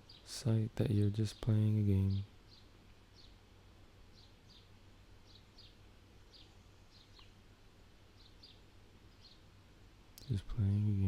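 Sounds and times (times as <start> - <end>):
small bird chirping: 0.0 - 3.4, 4.1 - 7.4, 8.1 - 9.6
faint low hum: 0.0 - 11.0.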